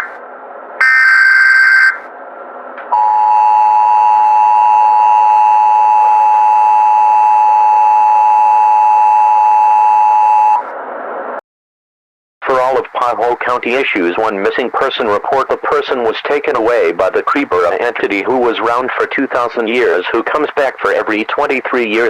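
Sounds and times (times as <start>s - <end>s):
data burst tones: 0.8s - 2.0s
two-tone attention signal: 0.8s - 2.0s.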